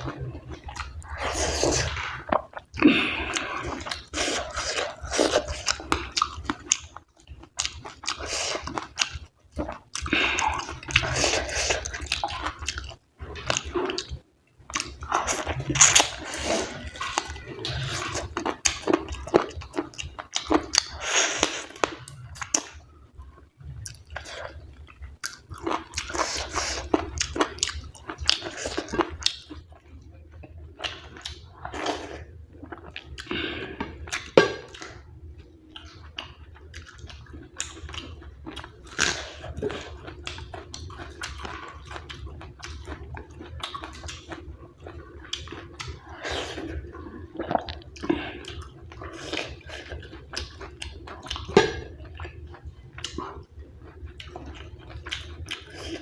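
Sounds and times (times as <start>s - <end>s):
person chewing food: 0.0s - 56.0s.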